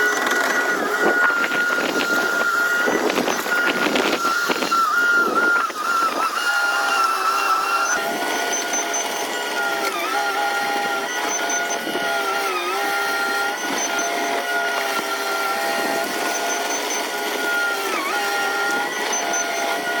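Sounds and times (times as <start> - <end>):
faint high beeps: 0.0 - 9.8
bulldozer engine whine: 0.0 - 20.0.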